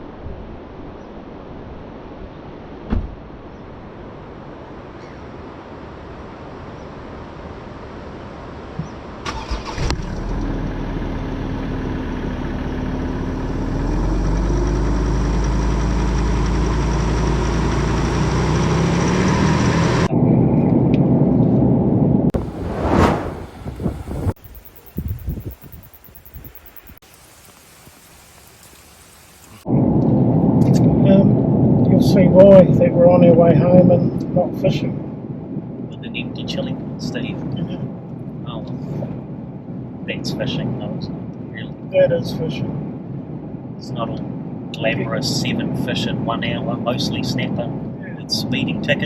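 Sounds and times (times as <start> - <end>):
wind: 0.0 - 49.0
car engine starting and running: 9.3 - 20.1
surf: 22.4 - 29.7.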